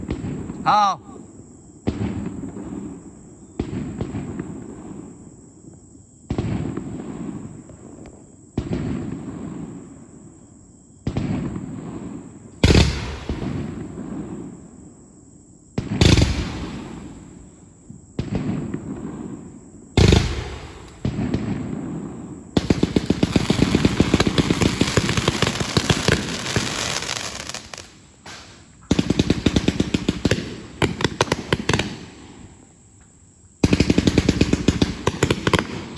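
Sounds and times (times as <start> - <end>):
loud firework bangs: 11.0 - 14.8, 15.8 - 32.6, 33.6 - 35.9
rapid-fire firework barrage: 11.0 - 14.8, 15.8 - 32.7, 33.6 - 35.9
firework cake firing shots: 12.6 - 14.6, 15.8 - 19.3, 20.0 - 32.5, 33.6 - 35.9.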